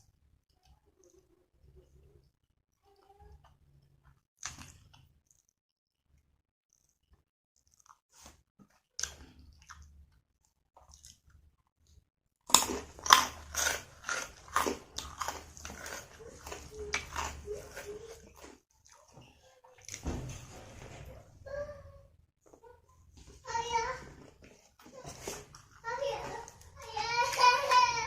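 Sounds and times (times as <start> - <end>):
person chewing crunchy food: 6.7 - 11.4, 12.5 - 19.2, 24.4 - 27.6.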